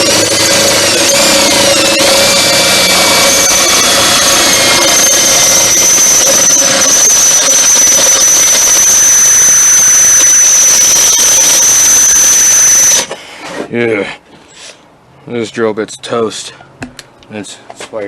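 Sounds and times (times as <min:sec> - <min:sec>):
drill bit squealing: 0:00.0 - 0:13.1
drill running: 0:00.0 - 0:13.1.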